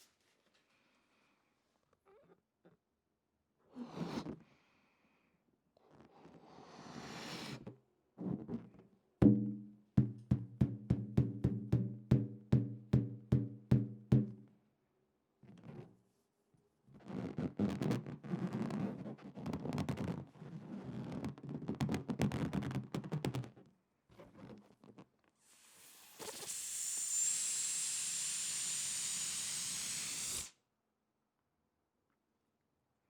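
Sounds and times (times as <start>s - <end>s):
air hissing from balloon: 25.4s - 30.6s.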